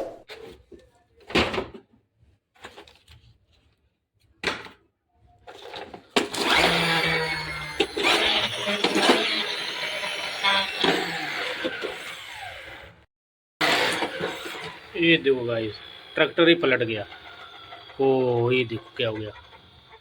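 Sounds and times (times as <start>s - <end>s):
toy motor whirring: 6.3s - 13.0s, 13.6s - 20.0s.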